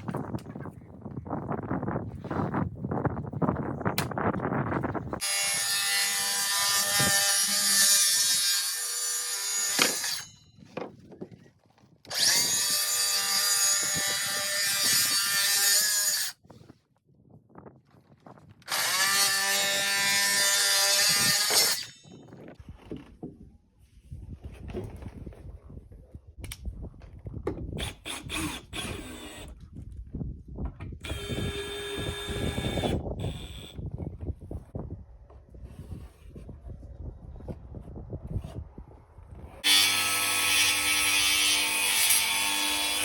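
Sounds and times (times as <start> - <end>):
chop saw cutting wood: 5.2 - 10.4, 12.1 - 16.4, 18.7 - 22.1, 39.6 - 43.0.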